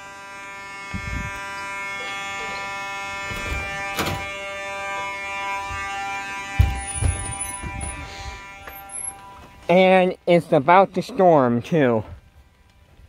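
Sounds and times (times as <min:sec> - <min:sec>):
fire alarm horn buzzing: 0:00.0 - 0:10.8
dull thumps: 0:06.6 - 0:07.8.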